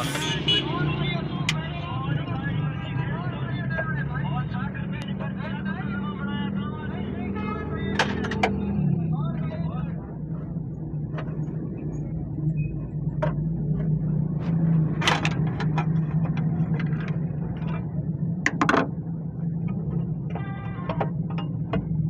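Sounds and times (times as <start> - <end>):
car engine humming: 0.0 - 22.0
sharp clicks and knocks: 13.0 - 22.0.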